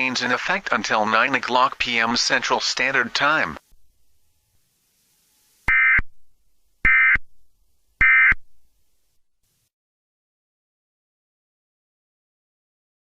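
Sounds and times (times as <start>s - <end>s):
digital data tone bursts: 5.7s - 6.1s, 6.8s - 7.2s, 8.0s - 8.4s.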